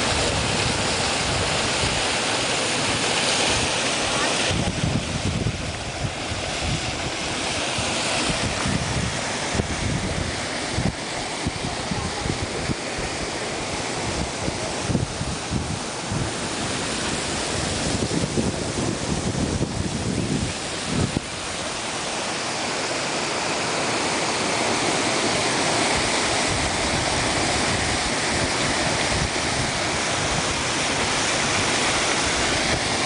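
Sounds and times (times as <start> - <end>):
wind buffeting microphone: 0.0 - 22.6, 24.0 - 33.0
waterfall rushing: 0.0 - 33.0.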